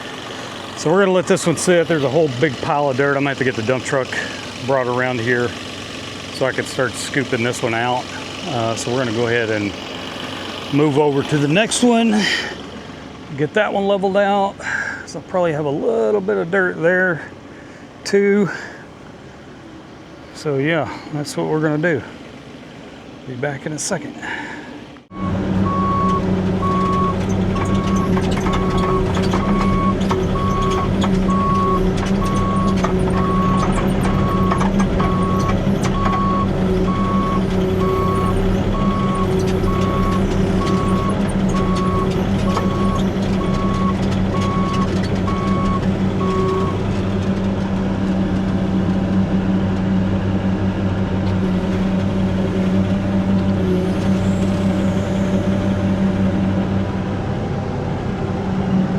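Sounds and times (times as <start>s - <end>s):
diesel engine running: 0.0s - 58.9s
backup alarm beeping: 25.1s - 46.8s.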